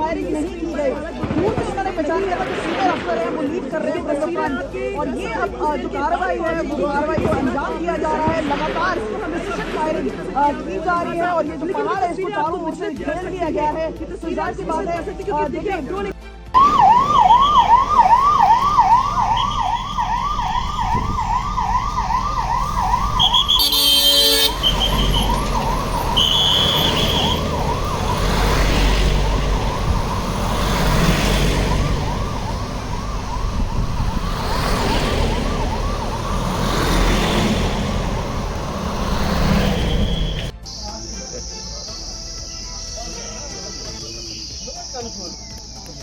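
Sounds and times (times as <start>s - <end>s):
siren yelping: 16.6s - 40.5s
low rumbling noise: 24.5s - 40.5s.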